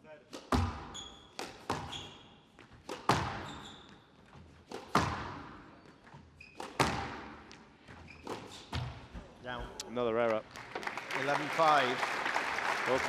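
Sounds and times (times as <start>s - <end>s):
squash ball hitting racket and walls: 0.3s - 9.4s
shoe squeaks on court floor: 0.4s - 9.1s.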